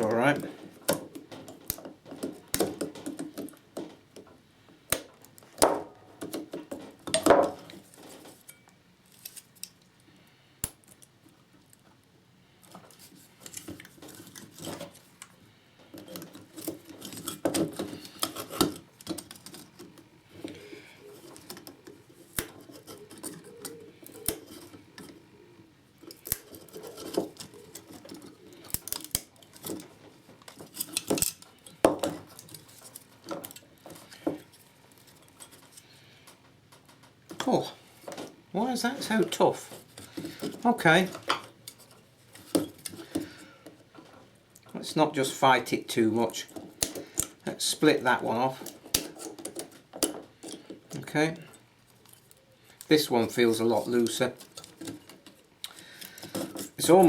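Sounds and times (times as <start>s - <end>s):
clicks and knocks of small parts: 0.5s - 9.9s, 12.6s - 20.6s, 26.0s - 37.5s, 46.4s - 47.5s, 48.6s - 53.0s, 54.0s - 56.8s.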